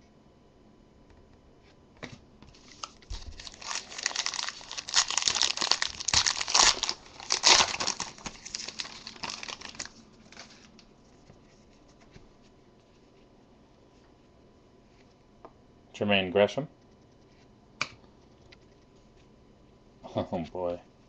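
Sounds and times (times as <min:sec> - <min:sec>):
foil wrapper tearing and crinkling: 0:02.6 - 0:10.7.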